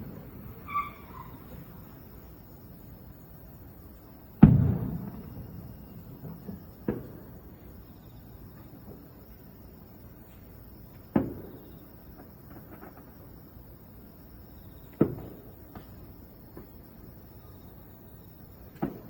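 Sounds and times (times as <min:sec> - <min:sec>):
fireworks booming: 0:00.0 - 0:02.9, 0:04.0 - 0:09.4, 0:10.8 - 0:13.2, 0:14.8 - 0:17.0, 0:18.6 - 0:19.0
faint fireworks pops: 0:04.3 - 0:09.5, 0:10.2 - 0:13.4, 0:14.8 - 0:17.4, 0:18.5 - 0:19.0.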